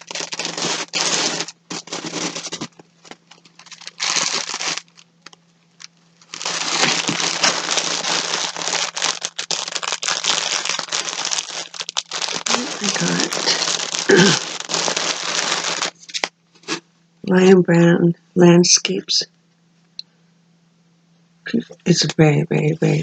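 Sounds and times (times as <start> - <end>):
packaging crinkling: 0.0 - 16.8.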